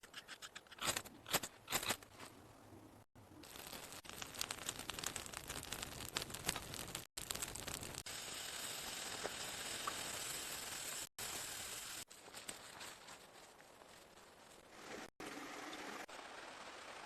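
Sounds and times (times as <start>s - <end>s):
crunching and crackling: 3.3s - 8.1s
steady hiss: 3.4s - 13.0s.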